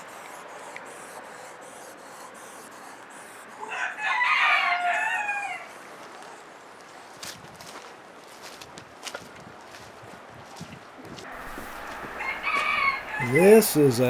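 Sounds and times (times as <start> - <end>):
rooster crowing: 3.7 - 5.8, 11.4 - 14.0.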